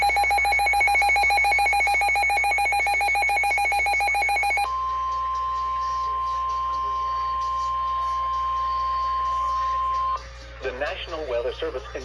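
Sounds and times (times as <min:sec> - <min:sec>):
pulsing buzzy beep: 0:00.0 - 0:04.7
steady pure alarm tone: 0:00.0 - 0:10.2.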